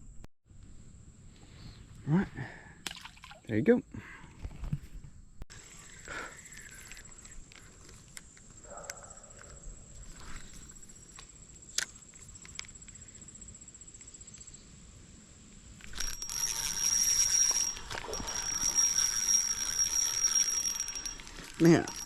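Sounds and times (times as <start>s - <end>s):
fishing reel whirring: 5.6s - 8.0s, 15.8s - 22.0s
fishing reel clicks: 5.8s - 8.3s, 15.8s - 22.0s.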